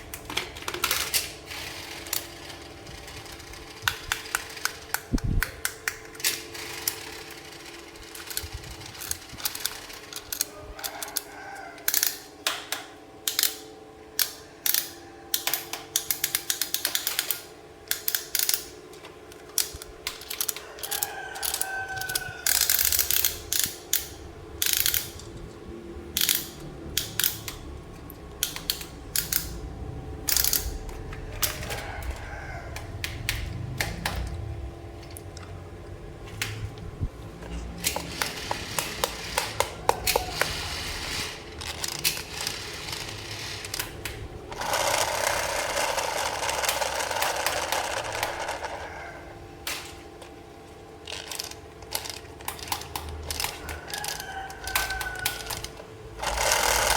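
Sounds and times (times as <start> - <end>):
plastic parts clicking and snapping: 0.1 - 1.5, 3.8 - 7.0, 8.2 - 29.6, 30.3 - 34.4, 36.3 - 40.6, 51.0 - 56.9
ratchet-like clicks: 0.8 - 12.3, 13.2 - 18.7, 19.3 - 25.4, 26.2 - 27.6, 28.4 - 29.6, 30.3 - 31.8, 37.8 - 48.8, 51.1 - 56.9.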